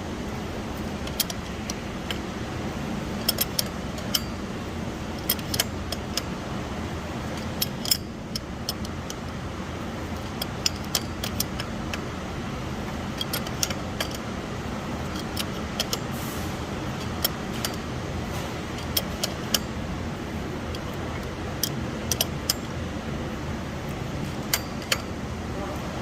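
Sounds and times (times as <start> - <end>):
steady background hum: 0.0 - 26.0
metallic clicks of hand tools: 1.0 - 2.3, 3.2 - 4.4, 5.2 - 6.3, 7.3 - 9.3, 10.2 - 12.1, 13.1 - 14.3, 15.0 - 16.1, 16.9 - 17.8, 18.7 - 19.8, 20.7 - 22.8, 24.4 - 25.1.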